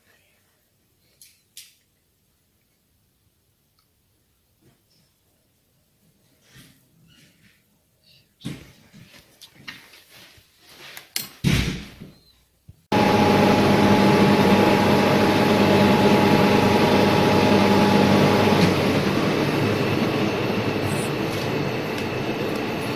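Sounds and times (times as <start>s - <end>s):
milling machine whining hum: 12.9s - 22.9s.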